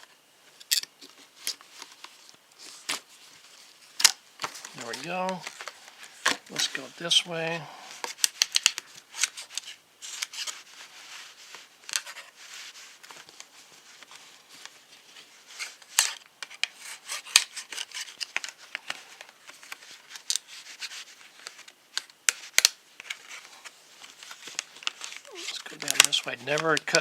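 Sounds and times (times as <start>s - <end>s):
knife scraping packaging: 8.0s - 10.8s, 15.5s - 18.8s
packaging clicks and snaps: 24.0s - 27.0s.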